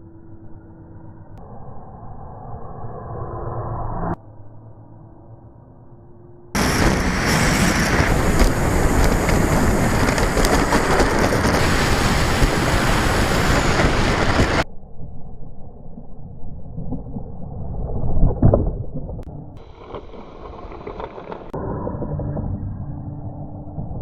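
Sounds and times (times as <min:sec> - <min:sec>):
rising whine: 0:00.0 - 0:16.2
muffled rumble: 0:06.6 - 0:14.6
rc plane propeller and wind: 0:06.6 - 0:14.6.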